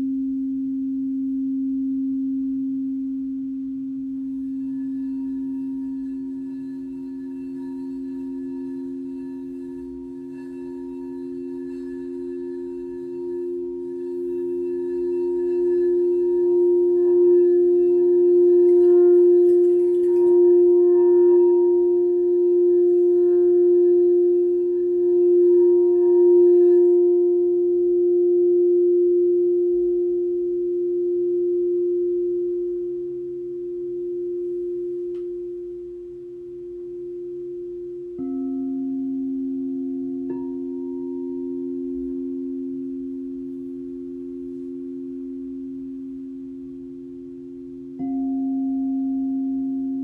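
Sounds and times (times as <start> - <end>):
singing bowl ringing: 4.1 - 50.0
singing bowl struck: 4.2 - 27.8, 34.2 - 50.0.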